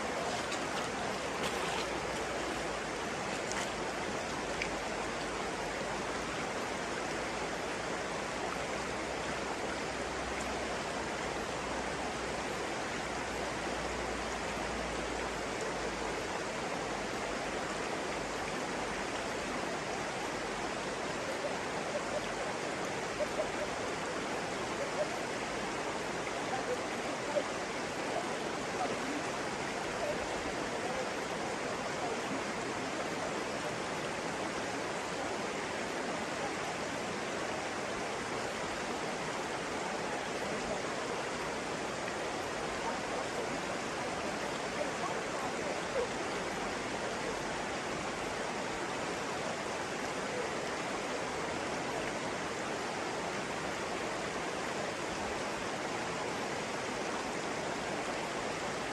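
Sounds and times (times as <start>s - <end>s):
water splashes and gurgles: 0.0s - 12.4s
stream water flowing: 0.0s - 58.9s.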